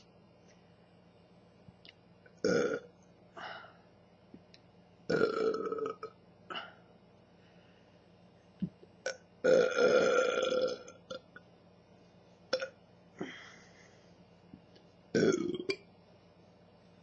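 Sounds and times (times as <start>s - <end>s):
woman burping: 2.4s - 2.8s, 5.1s - 6.8s, 12.5s - 12.8s.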